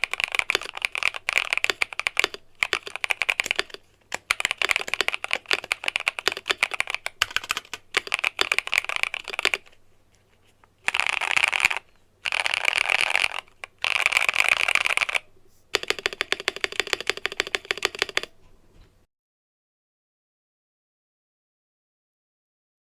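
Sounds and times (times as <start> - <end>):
mechanical keyboard typing: 0.0 - 9.8, 10.8 - 18.4.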